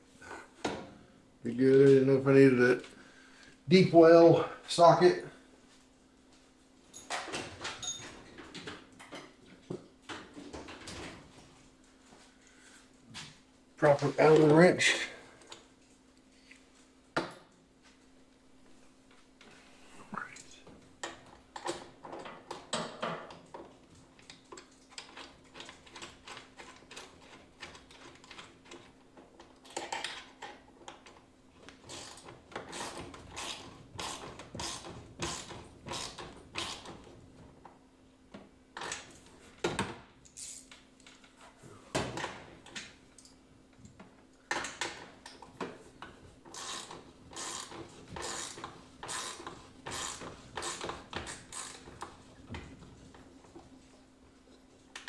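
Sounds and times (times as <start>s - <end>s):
ratchet wrench clicking: 40.3s - 40.7s, 46.5s - 51.8s.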